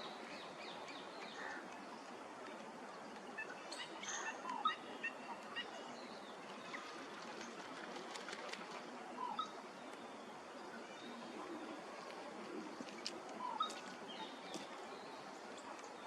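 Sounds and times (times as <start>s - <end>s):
steady background hiss: 0.0s - 16.0s
birds calling: 8.3s - 16.0s.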